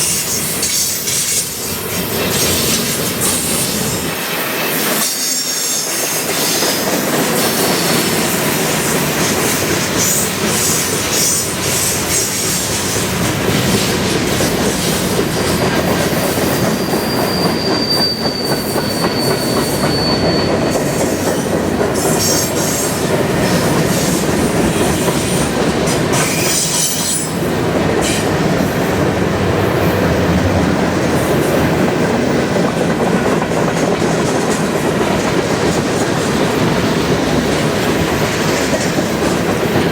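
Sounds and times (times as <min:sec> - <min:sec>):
train wheels on rails: 0:00.0 - 0:39.9
high wheel squeal: 0:02.3 - 0:06.6, 0:16.4 - 0:23.0, 0:26.2 - 0:28.3.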